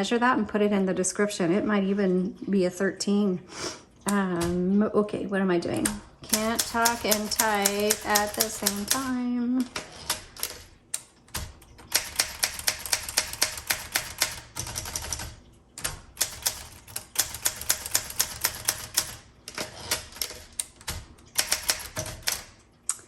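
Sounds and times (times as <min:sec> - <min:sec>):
manual typewriter typing: 0:04.0 - 0:04.7, 0:05.6 - 0:22.7.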